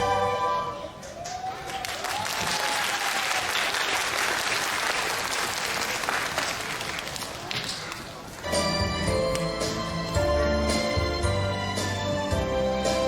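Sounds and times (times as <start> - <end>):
audience applauding: 1.1 - 8.2.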